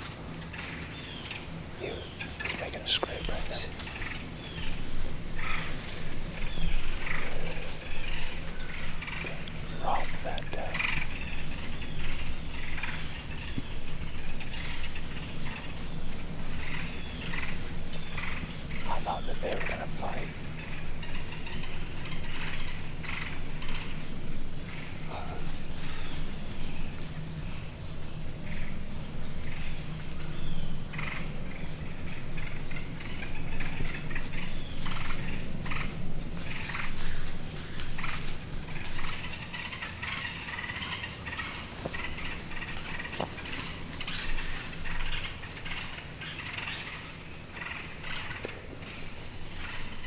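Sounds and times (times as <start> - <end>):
deer buck vocalizing: 1.6 - 26.0
rustling in dry leaves: 3.7 - 9.7, 20.3 - 50.0.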